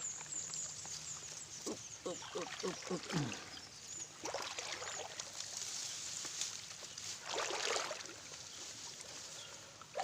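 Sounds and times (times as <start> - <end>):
footsteps wading through water: 4.1 - 9.2
water splash: 7.2 - 8.1.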